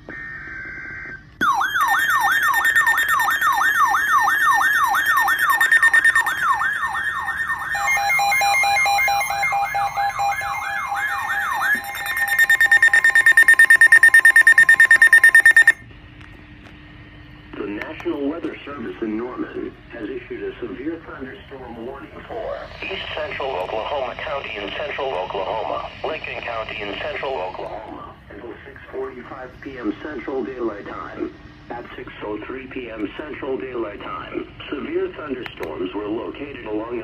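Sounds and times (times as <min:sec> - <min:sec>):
pulsed beeps: 0:00.1 - 0:15.8, 0:21.3 - 0:27.6
loud high pulsing tone: 0:00.1 - 0:15.9, 0:20.0 - 0:28.4
falling siren-like electronic sweep: 0:00.8 - 0:15.8, 0:21.8 - 0:24.3
buzzy alert tone burst: 0:01.4 - 0:15.8.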